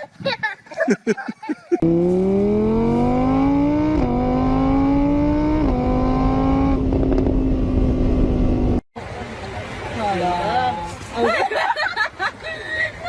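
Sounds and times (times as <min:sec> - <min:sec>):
engine accelerating through gears: 0:01.8 - 0:08.8.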